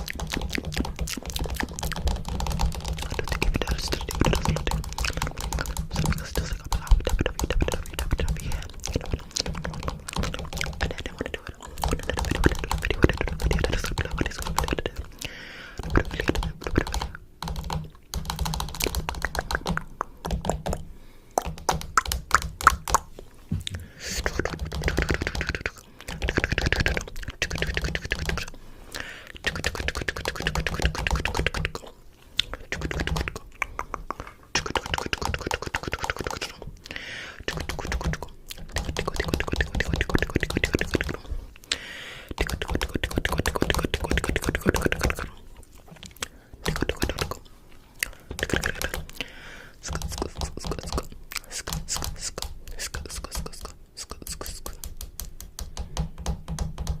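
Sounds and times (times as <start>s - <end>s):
rapid clicking and tapping: 0.0s - 15.1s, 15.8s - 20.8s, 21.4s - 23.1s, 24.1s - 28.5s, 29.4s - 31.9s, 32.5s - 36.6s, 37.4s - 41.2s, 42.3s - 45.3s, 46.6s - 47.4s, 48.3s - 49.2s, 49.8s - 57.0s.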